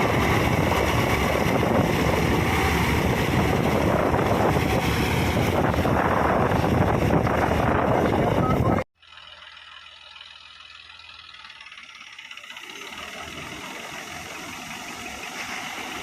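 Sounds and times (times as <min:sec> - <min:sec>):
wind buffeting microphone: 0:00.0 - 0:08.8
combine harvester running: 0:00.0 - 0:16.0.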